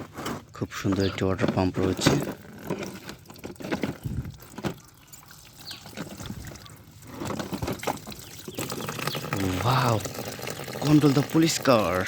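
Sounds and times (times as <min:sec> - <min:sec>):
faint water sounds: 0:02.5 - 0:12.0.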